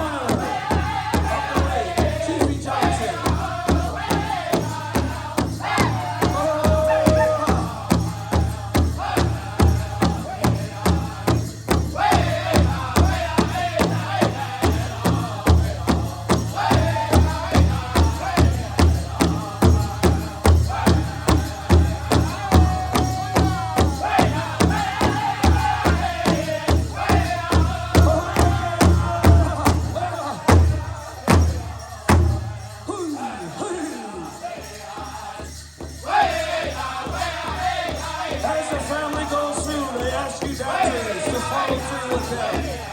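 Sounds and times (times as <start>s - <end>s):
big drum beating: 0.0s - 32.9s
singers chanting: 0.0s - 42.9s.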